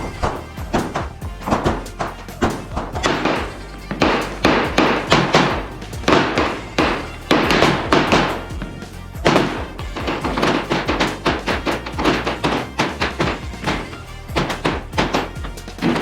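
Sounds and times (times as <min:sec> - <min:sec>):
music with percussive beat: 0:00.0 - 0:16.0.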